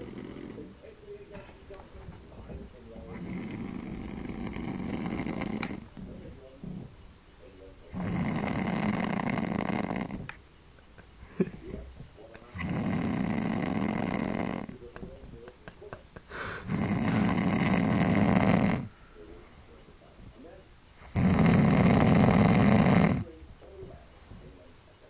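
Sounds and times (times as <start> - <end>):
man snoring loudly: 0.0 - 0.7, 3.1 - 5.8, 7.9 - 10.2, 12.5 - 14.8, 16.3 - 18.9, 21.1 - 23.2.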